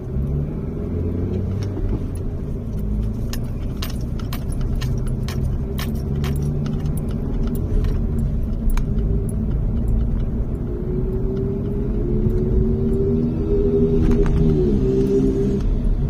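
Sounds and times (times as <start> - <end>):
car road rumble: 0.0 - 16.0
light clicking and rattling: 1.3 - 13.0
rising droning tone: 6.4 - 16.0.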